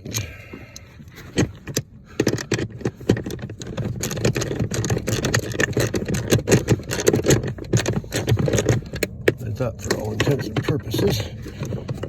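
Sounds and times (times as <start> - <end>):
hand tools clicking and rattling: 0.0 - 12.0.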